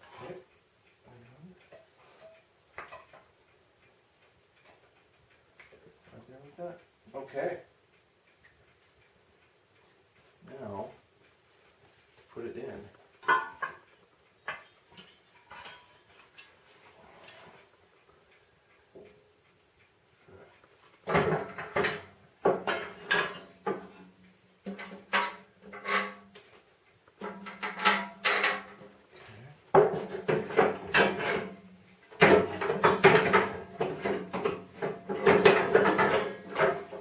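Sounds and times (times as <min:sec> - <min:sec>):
metal scraping and clunking: 0:14.5 - 0:17.7, 0:21.1 - 0:24.1, 0:27.2 - 0:29.0, 0:29.8 - 0:37.0.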